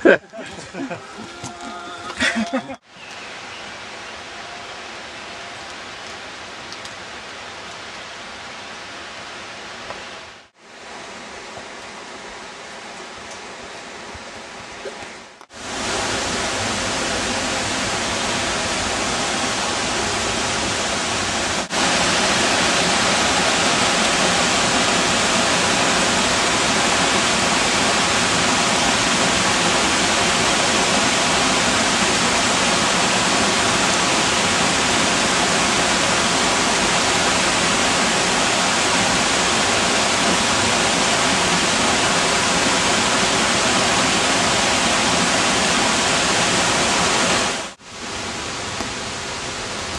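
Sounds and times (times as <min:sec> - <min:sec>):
waterfall pouring: 0:15.6 - 0:49.7.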